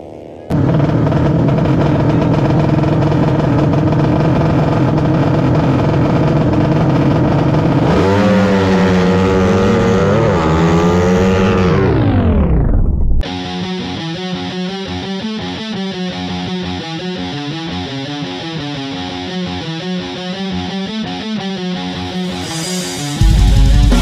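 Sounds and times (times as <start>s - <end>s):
motorcycle engine at high revs: 0.0s - 12.6s.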